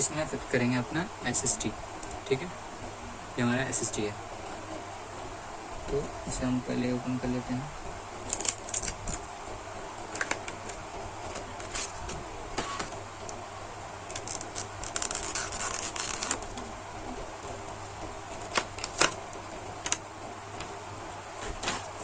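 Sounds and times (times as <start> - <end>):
packaging rustling: 8.2 - 9.3, 10.0 - 13.4, 14.0 - 16.7, 17.5 - 22.0.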